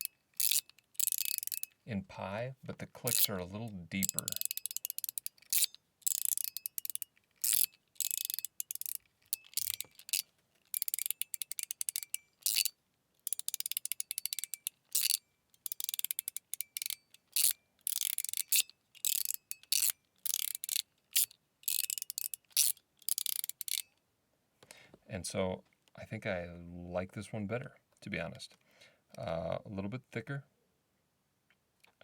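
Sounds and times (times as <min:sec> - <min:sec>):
metal fidget slider clicking: 0:00.0 - 0:01.8, 0:03.0 - 0:23.9.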